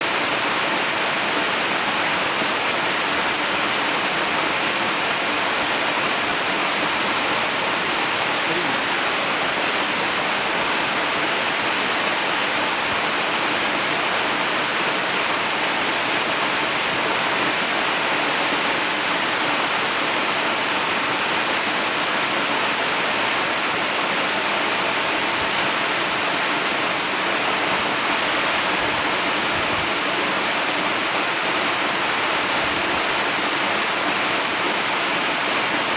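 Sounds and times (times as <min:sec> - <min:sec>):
waterfall rushing: 0:00.0 - 0:25.2.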